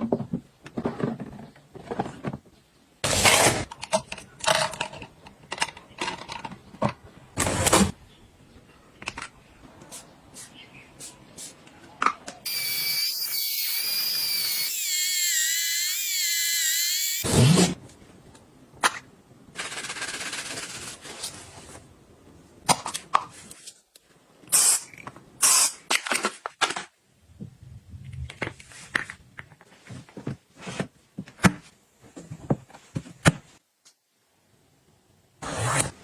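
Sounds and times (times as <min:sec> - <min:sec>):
hiss: 0:24.5 - 0:25.8.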